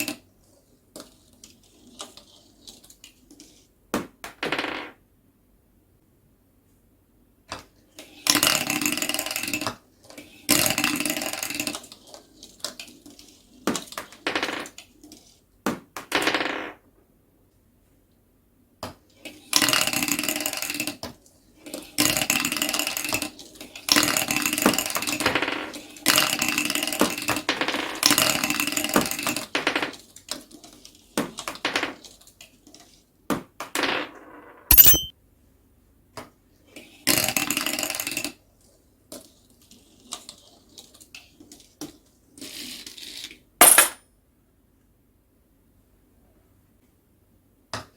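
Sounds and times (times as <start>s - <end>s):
sharp clink: 34.7s - 35.1s.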